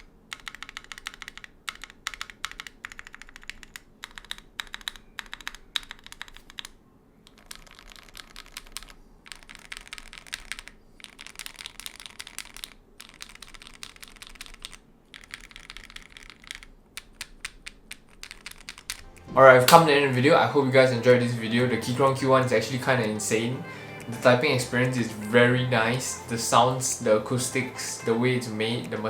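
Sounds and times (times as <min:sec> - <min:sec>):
mechanical keyboard typing: 0:00.0 - 0:19.9.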